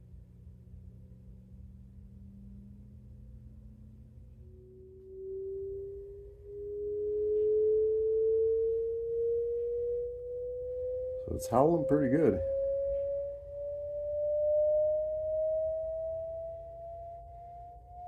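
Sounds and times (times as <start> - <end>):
rising sine-tone sweep: 0.0 - 18.0.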